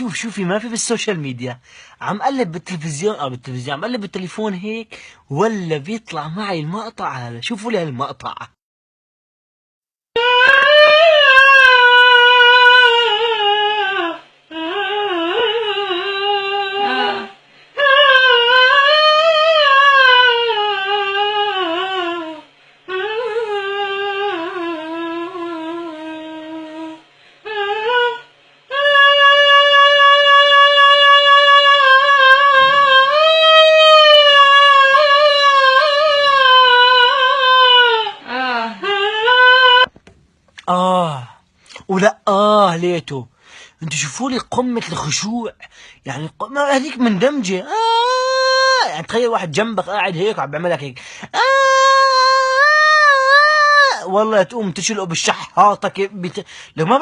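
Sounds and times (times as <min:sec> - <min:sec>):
woman singing high notes: 0:10.2 - 0:39.9.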